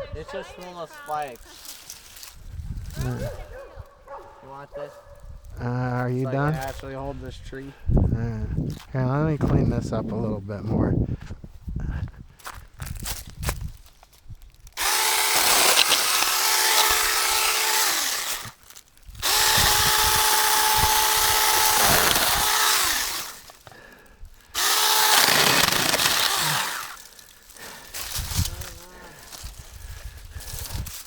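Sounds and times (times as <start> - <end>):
mini chainsaw cutting branches: 12.9 - 31.0.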